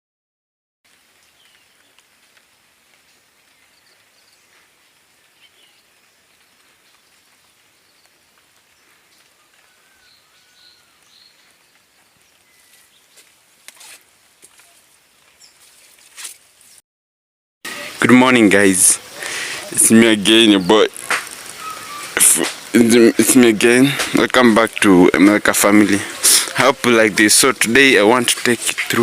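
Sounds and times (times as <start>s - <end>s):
faint rain hiss: 0.9s - 16.8s, 17.7s - 29.0s
bird chirps: 5.3s - 8.2s, 8.8s - 13.3s, 21.6s - 22.1s.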